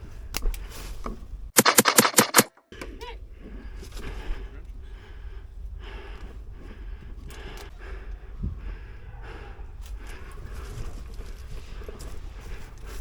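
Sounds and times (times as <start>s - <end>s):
airsoft rifle shots: 1.6s - 2.6s.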